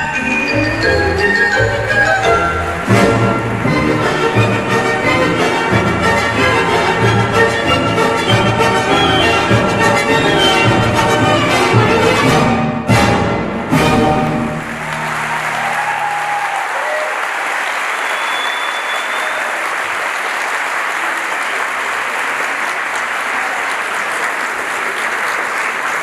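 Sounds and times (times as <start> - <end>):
orchestral music chord: 0.0 - 8.6, 10.8 - 15.4
audience applauding: 14.2 - 26.0.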